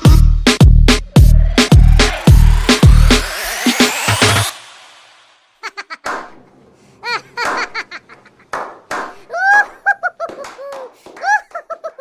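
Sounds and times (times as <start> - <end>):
person laughing: 5.6 - 6.1, 7.0 - 8.5, 9.2 - 12.0.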